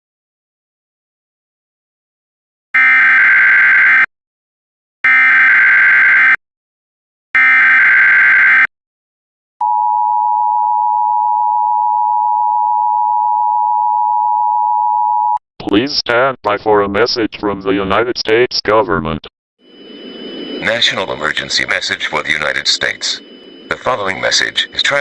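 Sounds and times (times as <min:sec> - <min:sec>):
data tone bursts: 0:19.6 - 0:25.0
two-tone attention signal: 0:19.7 - 0:25.0.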